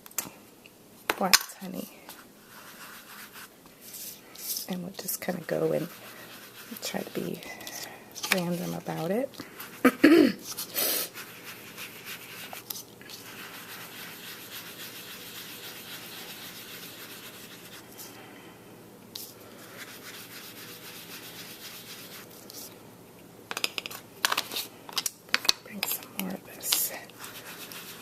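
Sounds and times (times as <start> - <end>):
scratchy rubbing on cardstock: 2.4 - 4.6, 5.2 - 8.9, 10.4 - 18.0, 19.6 - 22.7, 26.7 - 28.0.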